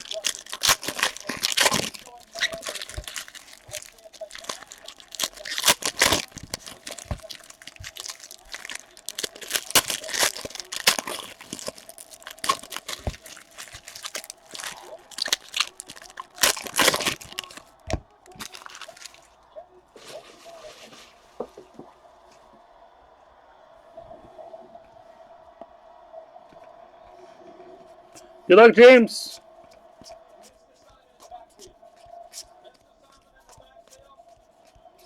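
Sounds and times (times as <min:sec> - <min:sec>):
plastic wrappers crinkling: 0:00.0 - 0:22.5.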